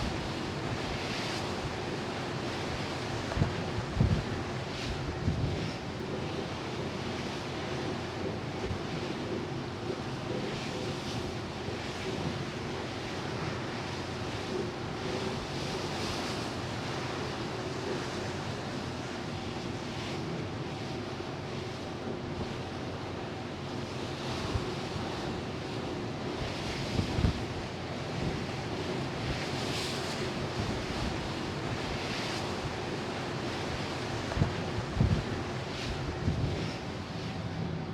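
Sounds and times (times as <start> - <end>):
ship engine hum: 0.0 - 37.9
wind buffeting microphone: 3.2 - 6.0, 26.4 - 27.6, 34.2 - 37.9.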